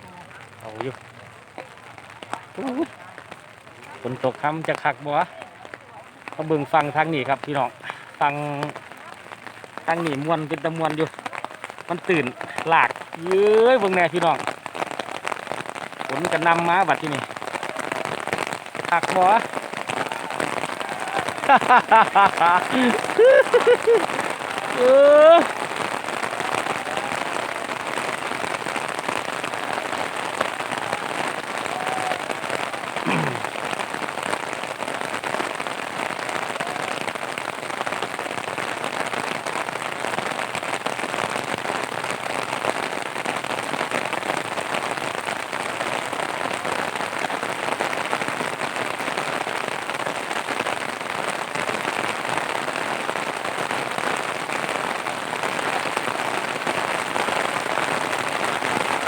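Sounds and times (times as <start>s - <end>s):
heavy rain falling: 0.0s - 59.0s.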